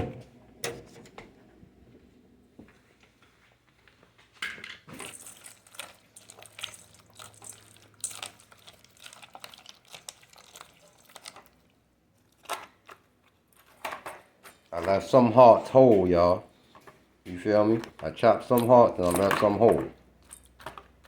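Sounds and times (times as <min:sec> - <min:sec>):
meat being mixed in a container: 0:04.9 - 0:13.8, 0:14.6 - 0:16.3.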